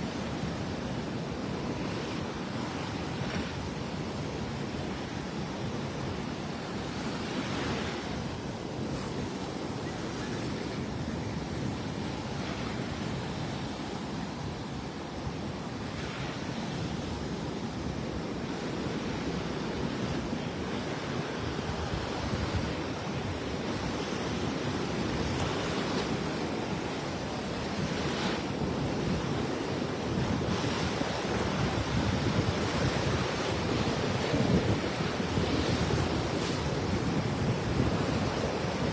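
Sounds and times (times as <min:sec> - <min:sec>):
wind buffeting microphone: 0:24.8 - 0:38.9.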